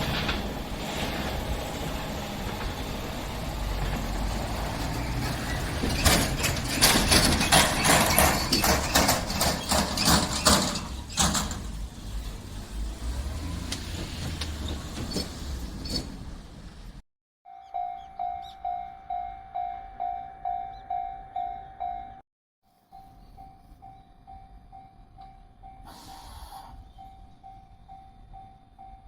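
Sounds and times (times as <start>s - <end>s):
wheel clacks over rail joints: 0.0s - 16.8s
train rumble: 0.0s - 17.0s.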